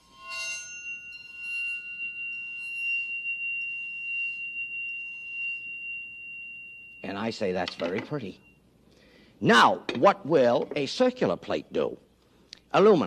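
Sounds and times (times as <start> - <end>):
plate ringing tone: 0.0 - 10.8.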